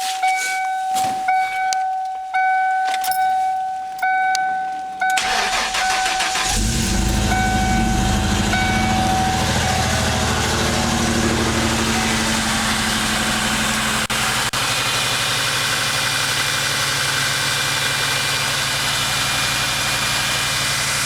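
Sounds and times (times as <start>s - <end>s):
car warning chime: 0.2s - 11.5s
starter cranking: 5.2s - 11.8s
misfiring engine idling: 5.2s - 21.0s.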